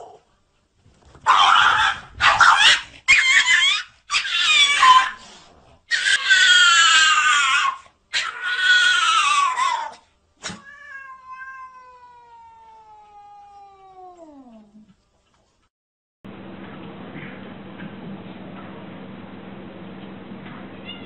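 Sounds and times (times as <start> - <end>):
cat yowling: 1.3 - 5.2, 5.9 - 14.7.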